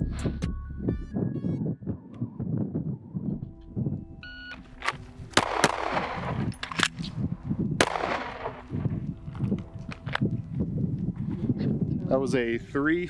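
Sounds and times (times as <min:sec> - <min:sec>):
pistol shots: 0:04.8 - 0:07.1, 0:07.8 - 0:08.9.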